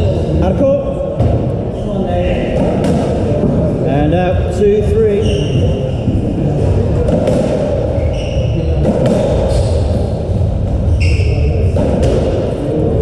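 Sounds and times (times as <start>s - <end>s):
low rumble of hall: 0.0s - 13.0s
shoes squeaking on court: 5.1s - 6.4s, 7.1s - 12.2s.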